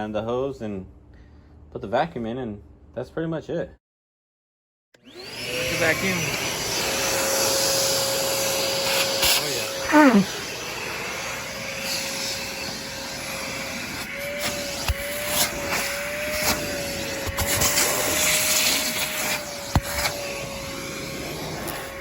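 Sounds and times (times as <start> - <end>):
shop vacuum motor whine: 5.0 - 22.0
rushing air hiss: 8.8 - 12.1.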